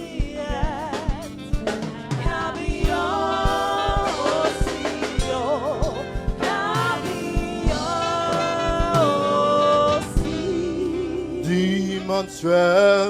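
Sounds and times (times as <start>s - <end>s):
drum beat: 0.0s - 9.3s
keyboard: 0.0s - 13.0s
choir singing: 1.7s - 12.9s.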